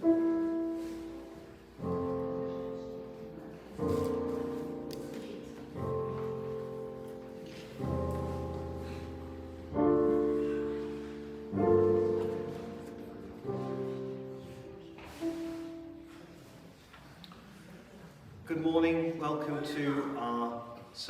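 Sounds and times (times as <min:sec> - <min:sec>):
piano playing slow chords: 0:00.0 - 0:16.8.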